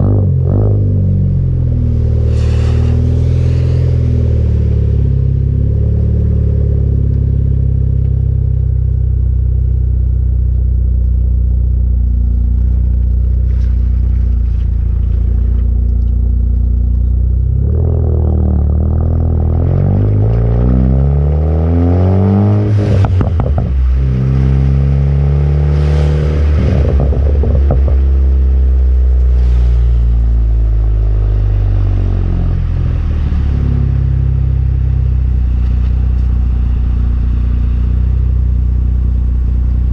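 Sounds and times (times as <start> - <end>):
engine revving: 0.0 - 8.0, 17.3 - 39.9
car exhaust drone: 0.0 - 39.9
exhaust crackles and pops: 0.0 - 39.9.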